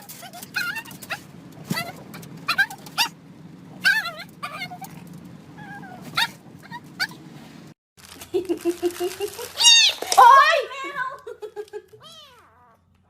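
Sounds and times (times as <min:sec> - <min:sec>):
dog whining and yipping: 0:00.0 - 0:07.3, 0:12.0 - 0:12.9
cat meowing: 0:05.6 - 0:07.2, 0:09.6 - 0:10.0, 0:12.0 - 0:13.0.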